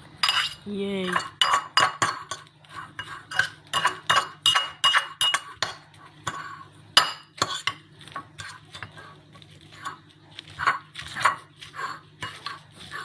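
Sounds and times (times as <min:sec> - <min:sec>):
fork clinking and scraping on dish: 0:00.2 - 0:09.0.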